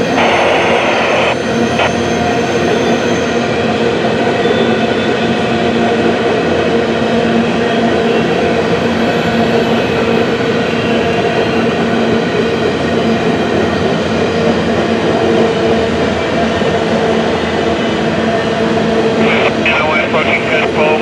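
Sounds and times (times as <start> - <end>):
constant humming tones: 0.0 - 1.9
freight train wheels rumbling on rail: 0.0 - 21.0.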